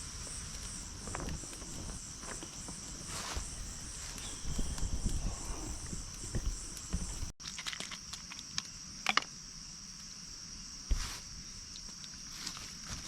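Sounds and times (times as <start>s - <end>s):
crickets chirping: 0.0s - 13.0s
low thumps: 0.7s - 7.3s.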